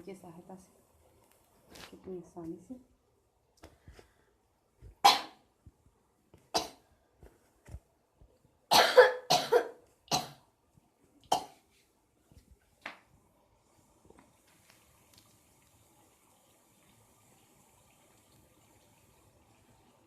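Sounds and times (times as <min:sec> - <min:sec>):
person coughing: 0:08.7 - 0:10.4.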